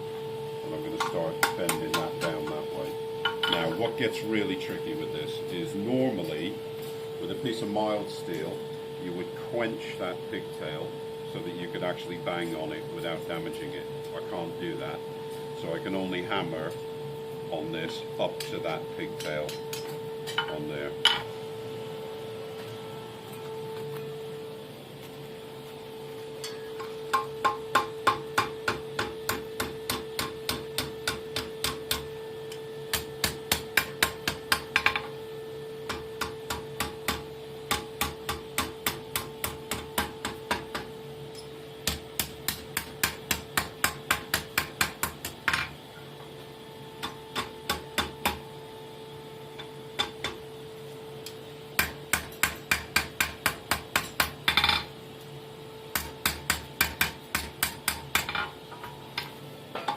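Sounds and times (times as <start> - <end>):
steady hum: 0.0 - 59.9
hammer ringing on anvil: 26.4 - 32.0.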